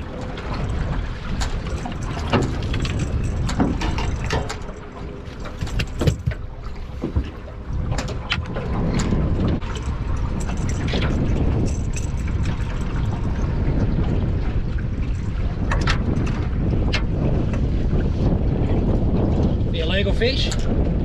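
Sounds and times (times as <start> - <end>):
water lapping against boat: 0.0 - 21.0
wind rumble on microphone: 0.0 - 21.0
knocks and clatter of gear: 0.2 - 13.3.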